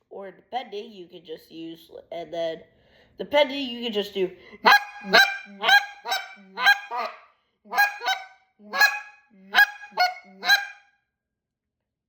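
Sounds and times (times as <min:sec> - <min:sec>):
goose call honking: 0:04.6 - 0:10.8.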